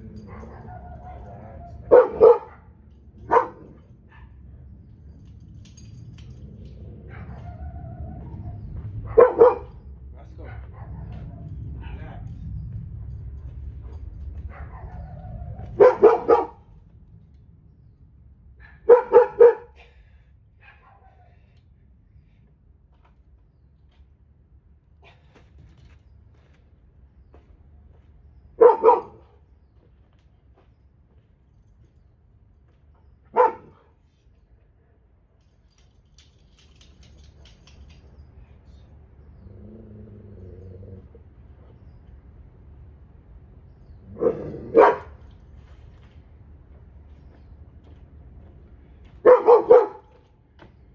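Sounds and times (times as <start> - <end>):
dog barking: 0.2 - 4.4, 7.1 - 9.8, 14.5 - 16.6, 18.6 - 19.8, 28.6 - 29.4, 33.3 - 33.9, 44.2 - 45.2, 49.2 - 50.2
low drawn-out sound: 2.9 - 18.8.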